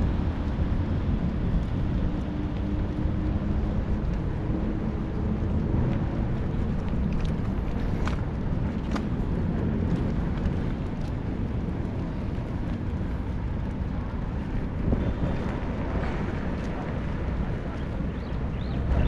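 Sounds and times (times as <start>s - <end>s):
wind buffeting microphone: 0.0s - 19.0s
light bike clicks: 0.4s - 14.7s.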